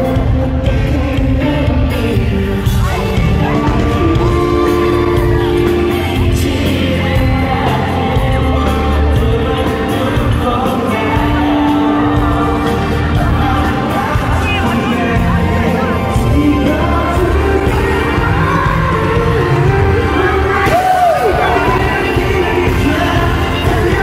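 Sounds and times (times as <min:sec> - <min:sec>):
live pop song: 0:00.0 - 0:24.0
crowd yelling and whooping: 0:02.5 - 0:24.0.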